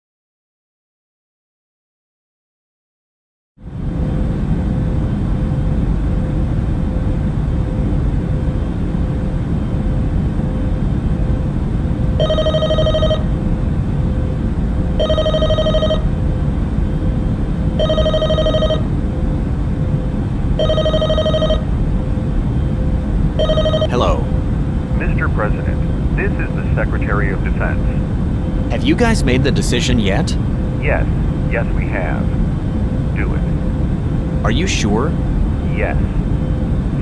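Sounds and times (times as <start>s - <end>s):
telephone ringing: 12.2s - 13.2s, 15.0s - 16.0s, 17.8s - 18.8s, 23.4s - 23.9s.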